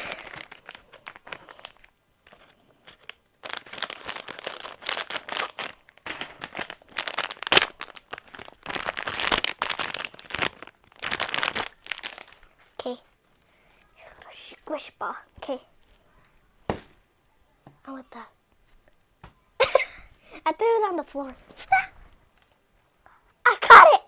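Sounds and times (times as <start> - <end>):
plastic packaging tearing and crinkling: 0.0 - 13.3.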